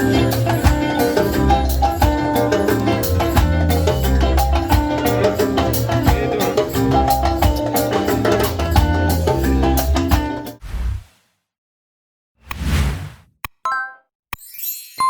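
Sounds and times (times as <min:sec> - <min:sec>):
upbeat music with percussive beat: 0:00.0 - 0:10.6.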